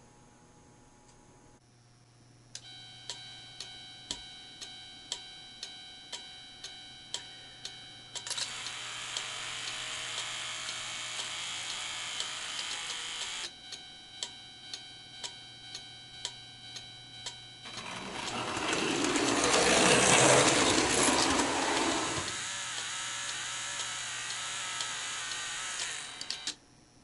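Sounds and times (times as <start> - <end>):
mechanical running noise: 8.2 - 13.5, 17.6 - 26.6
model train running: 17.7 - 22.4.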